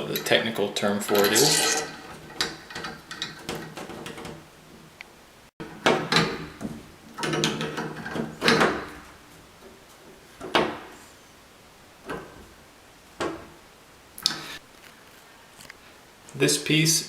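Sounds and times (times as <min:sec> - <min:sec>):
metal rattling and scraping: 0:00.0 - 0:04.4.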